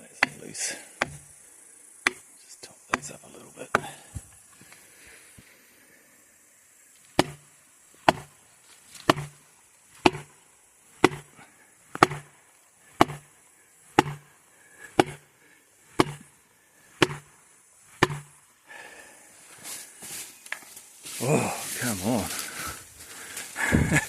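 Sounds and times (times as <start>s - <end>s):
hammer striking wedges: 0.2s - 0.4s, 1.0s - 1.3s, 2.9s - 4.0s, 7.2s - 8.3s, 9.0s - 9.4s, 10.0s - 10.3s, 11.0s - 11.3s, 11.9s - 12.3s, 13.0s - 13.3s, 14.0s - 14.3s, 15.0s - 15.2s, 16.0s - 16.3s, 17.0s - 17.3s, 18.0s - 18.4s.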